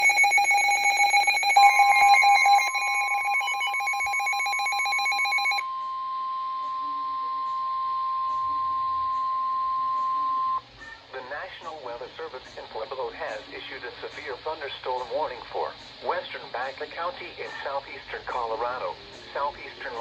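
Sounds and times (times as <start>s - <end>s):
rapid electronic beeping: 0.0s - 5.6s
steady electronic alarm tone: 0.0s - 10.6s.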